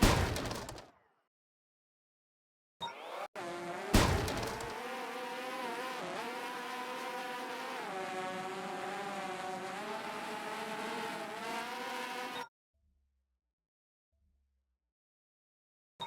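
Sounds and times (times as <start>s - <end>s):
drone propellers whining: 3.0s - 12.4s.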